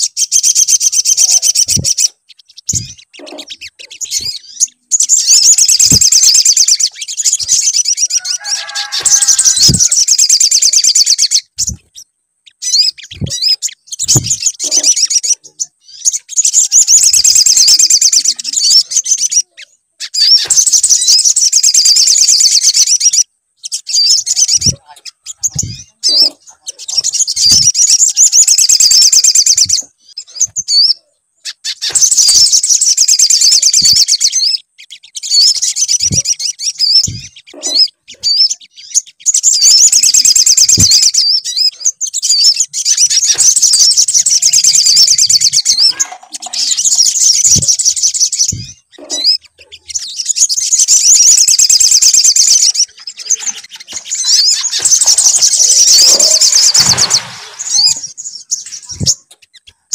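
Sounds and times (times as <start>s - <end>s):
sunbird chittering trills: 0.0s - 59.9s
low thumps: 2.7s - 3.0s, 13.1s - 14.4s.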